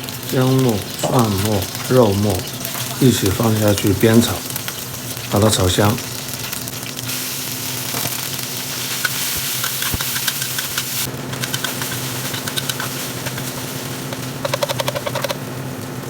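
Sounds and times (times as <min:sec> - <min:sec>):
meat sizzling in a pan: 0:00.0 - 0:16.0
spatula scraping a pan: 0:08.9 - 0:15.4.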